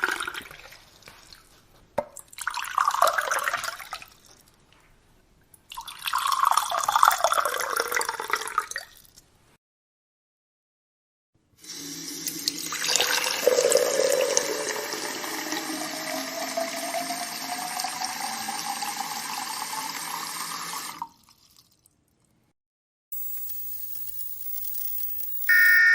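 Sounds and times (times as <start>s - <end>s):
liquid pouring into container: 0.0s - 1.1s, 2.2s - 4.3s, 5.7s - 9.1s, 11.8s - 22.0s.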